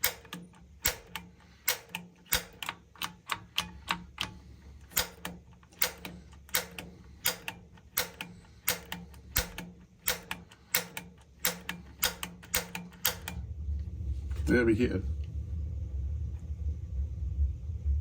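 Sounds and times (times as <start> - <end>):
spark igniter clicking: 0.0 - 13.4.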